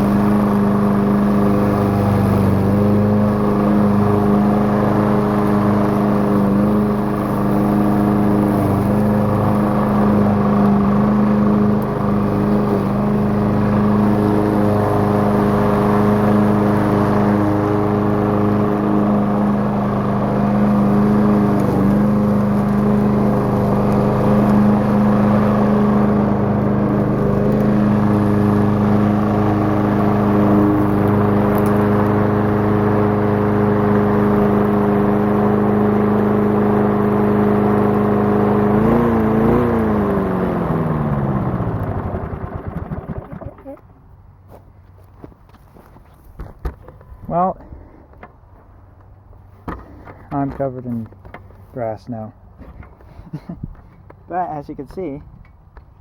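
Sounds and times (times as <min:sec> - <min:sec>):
lawnmower engine cutting grass: 0:00.0 - 0:44.1.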